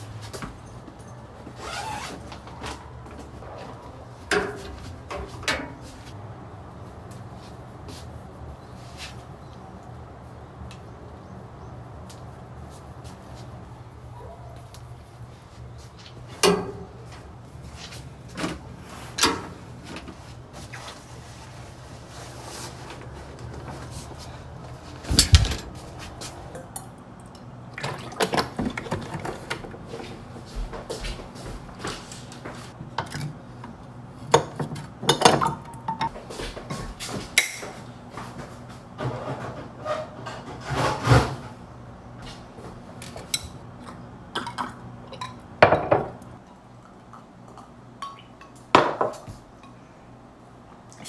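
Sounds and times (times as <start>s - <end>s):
knocks of cupboard or drawer: 25.1s - 25.8s.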